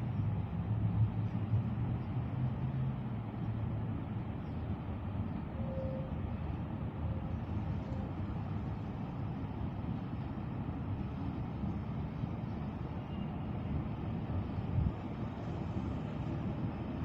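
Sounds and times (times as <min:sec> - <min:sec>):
low engine hum: 0:00.0 - 0:17.0
steady outdoor noise: 0:00.0 - 0:17.0.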